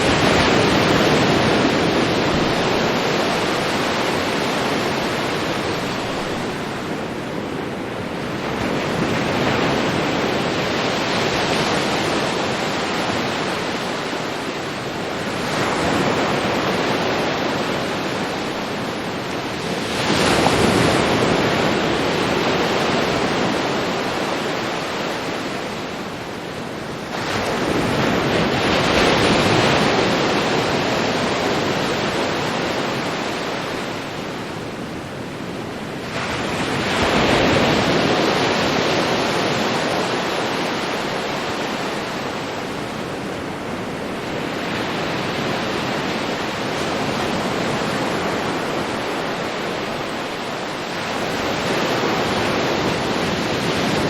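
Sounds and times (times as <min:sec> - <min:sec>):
ocean waves breaking on beach: 0:00.0 - 0:54.0.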